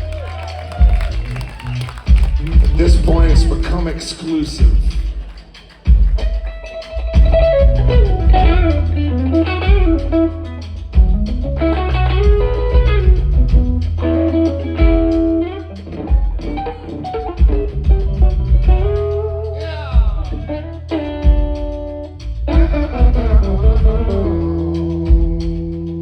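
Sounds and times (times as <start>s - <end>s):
drum hits: 0.0s - 6.5s, 10.9s - 11.6s
bass guitar: 0.0s - 26.0s
electric guitar lead lines: 6.2s - 26.0s.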